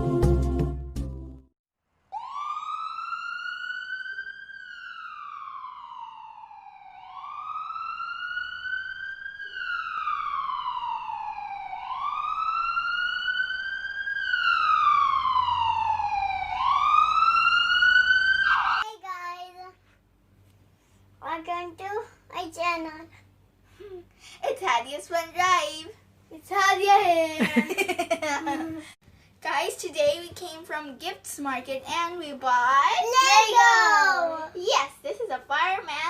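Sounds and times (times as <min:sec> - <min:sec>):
music: 0:00.0 - 0:01.5
siren wailing: 0:02.1 - 0:18.8.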